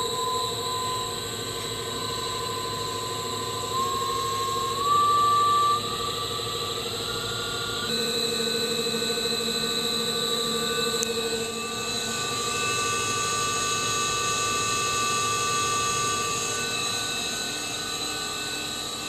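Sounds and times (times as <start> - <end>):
grinding machine whine: 0.0 - 19.0.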